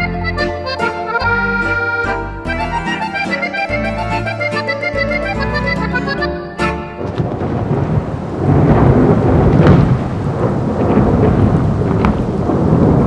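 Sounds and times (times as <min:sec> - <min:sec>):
accordion music: 0:00.0 - 0:07.1
heavy rain: 0:06.8 - 0:13.0
rolling thunder: 0:07.0 - 0:13.0.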